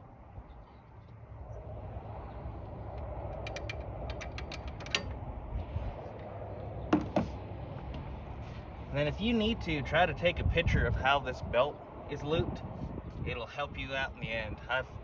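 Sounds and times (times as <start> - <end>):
steady low rumble: 0.0 - 15.0
ratchet clicking: 2.9 - 5.2
sharp metallic knocks: 2.9 - 5.2.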